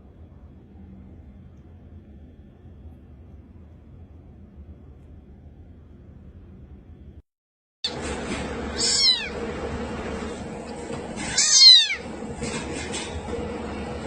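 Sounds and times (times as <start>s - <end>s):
steady background hum: 0.0s - 7.2s, 7.9s - 14.0s
cat meowing: 8.7s - 9.4s, 11.2s - 12.1s.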